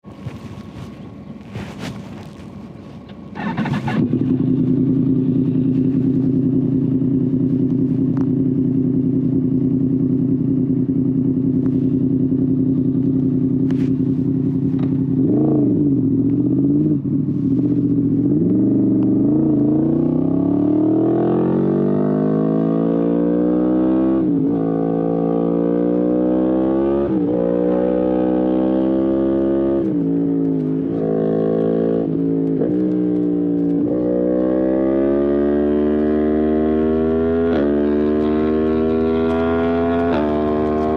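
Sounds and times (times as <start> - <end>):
motorcycle revving and accelerating: 0.0 - 40.9
motorcycle engine idling: 0.1 - 19.2.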